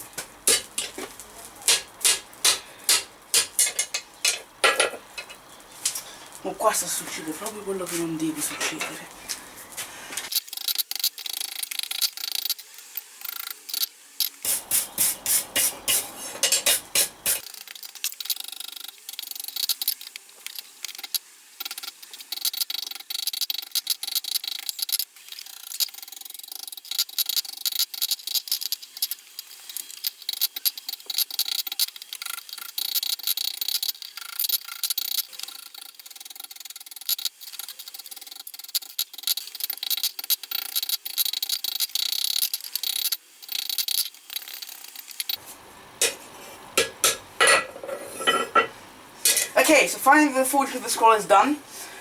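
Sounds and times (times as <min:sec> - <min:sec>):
hammer striking steel on anvil: 0:00.5 - 0:05.4, 0:15.3 - 0:17.4, 0:46.8 - 0:48.7.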